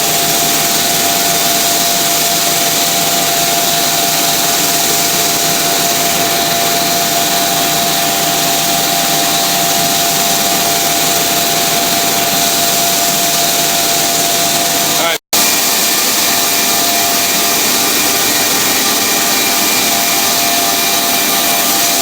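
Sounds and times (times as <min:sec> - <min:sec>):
central vacuum system running: 0:00.0 - 0:22.0.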